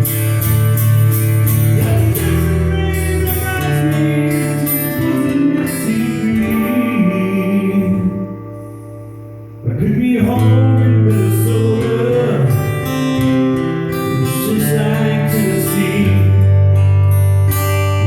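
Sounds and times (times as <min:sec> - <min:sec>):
live rock band playing: 0:00.0 - 0:09.6
person singing: 0:01.6 - 0:08.6, 0:09.7 - 0:13.4, 0:14.0 - 0:16.6.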